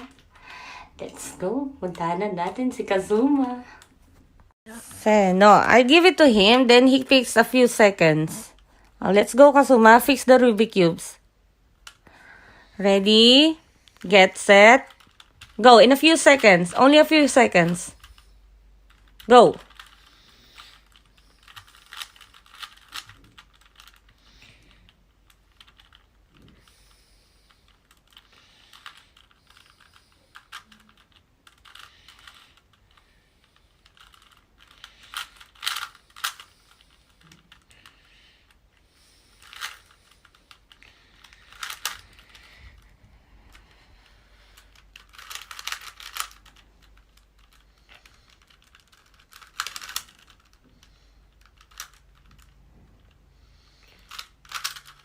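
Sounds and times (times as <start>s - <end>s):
puzzle cube clicking: 14.8s - 15.6s, 18.9s - 26.6s, 27.6s - 33.0s, 33.8s - 37.8s, 39.4s - 42.5s, 44.5s - 52.6s, 54.0s - 55.0s.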